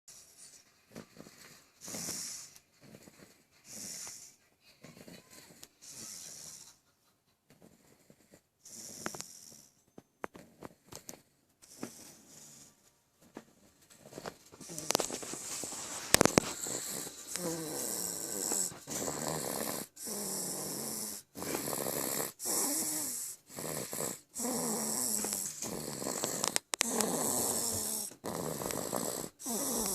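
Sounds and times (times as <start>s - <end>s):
person snoring: 7.9s - 9.8s, 14.6s - 29.9s.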